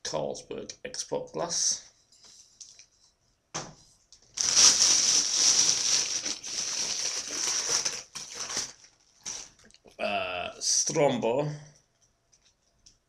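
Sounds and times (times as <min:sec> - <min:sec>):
wrapping crinkling: 0:04.2 - 0:09.8.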